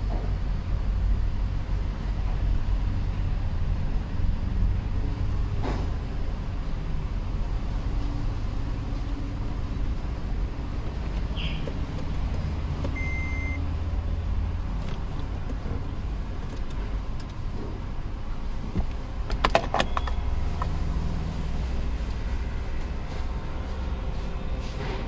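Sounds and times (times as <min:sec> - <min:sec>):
car engine running: 0:09.3 - 0:23.4
brief beep: 0:13.0 - 0:13.6.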